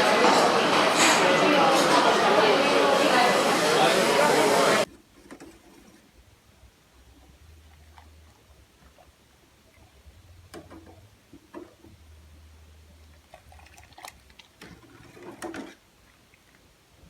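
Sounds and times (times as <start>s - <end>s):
utensils and dishes clinking: 0.0s - 4.2s
liquid splashing: 13.1s - 16.7s.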